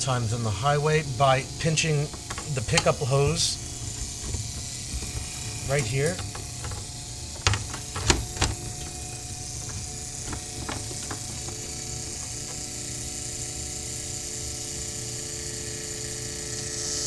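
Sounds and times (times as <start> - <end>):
fuel pump whirring whine: 0.0 - 17.0
steady tones: 0.8 - 13.2.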